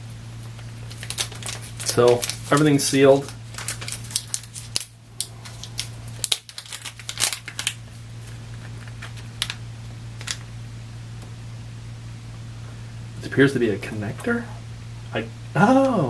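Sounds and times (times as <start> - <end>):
steady low hum: 0.0 - 16.0
plastic bag crinkling: 0.4 - 9.6, 10.2 - 10.5.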